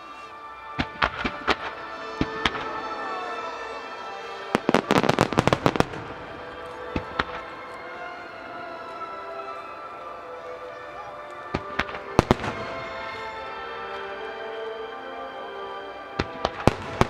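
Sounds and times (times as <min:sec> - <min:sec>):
fireworks bangs: 0:00.8 - 0:07.6, 0:11.5 - 0:13.4.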